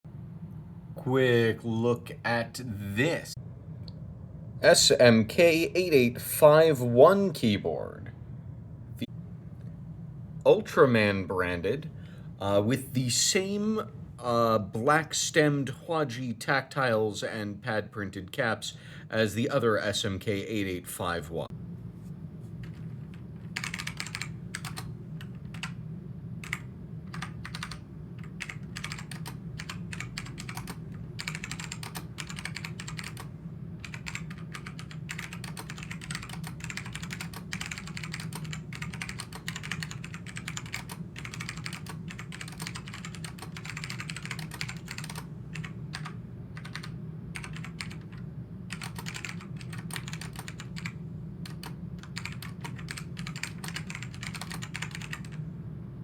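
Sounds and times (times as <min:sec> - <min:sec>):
low steady hum: 0:00.0 - 0:56.0
keyboard keys clicking: 0:22.6 - 0:25.8, 0:26.4 - 0:55.4.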